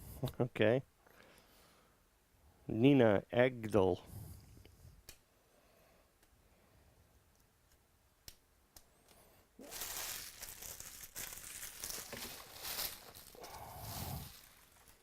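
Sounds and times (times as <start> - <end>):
wrapper tearing and crinkling: 9.6 - 15.0.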